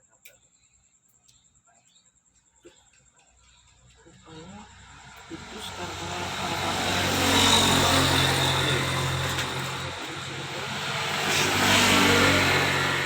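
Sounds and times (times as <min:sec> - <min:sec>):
vehicle engine passing: 0:04.1 - 0:13.0.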